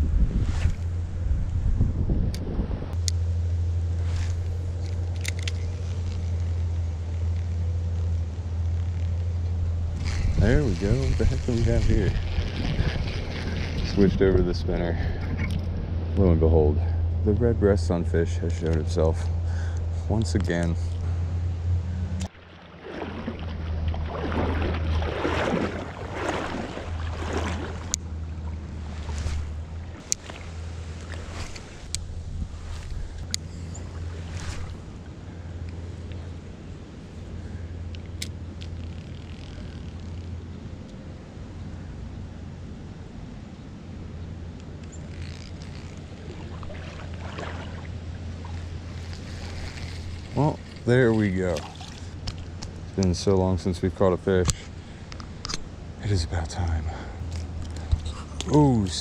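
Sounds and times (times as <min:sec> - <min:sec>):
wind buffeting microphone: 0:00.0 - 0:03.0, 0:09.8 - 0:16.1, 0:21.9 - 0:35.1
creek water flowing: 0:07.8 - 0:15.9, 0:20.8 - 0:37.9, 0:44.7 - 0:59.0.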